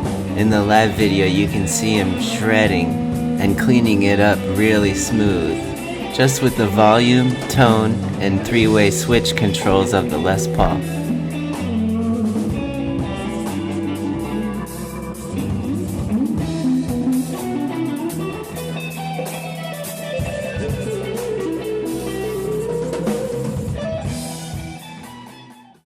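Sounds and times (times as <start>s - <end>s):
drums: 22.5s - 25.2s.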